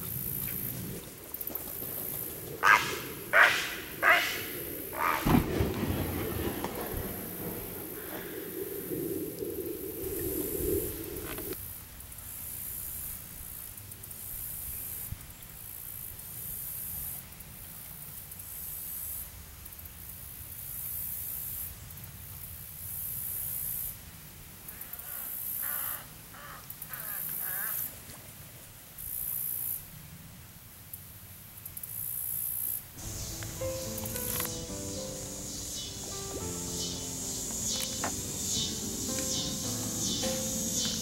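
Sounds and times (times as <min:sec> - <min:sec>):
insects buzzing: 0:00.0 - 0:11.6, 0:31.8 - 0:41.0
bird calling: 0:02.2 - 0:05.8, 0:33.0 - 0:41.0.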